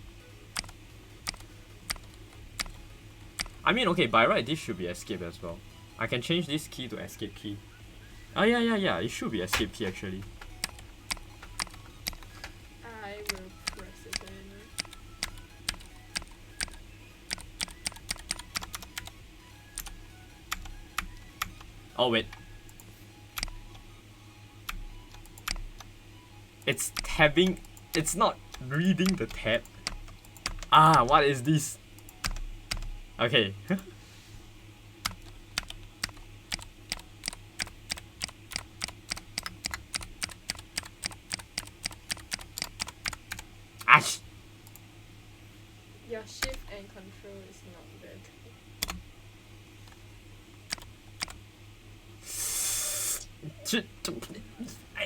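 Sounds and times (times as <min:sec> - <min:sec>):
mechanical keyboard clicks: 0:00.6 - 0:02.8, 0:03.4 - 0:03.6, 0:10.5 - 0:12.3, 0:13.2 - 0:19.1, 0:23.4 - 0:23.6, 0:24.7 - 0:25.9, 0:26.9 - 0:31.2, 0:35.0 - 0:43.4, 0:46.4 - 0:46.7, 0:48.8 - 0:49.0, 0:50.7 - 0:51.4.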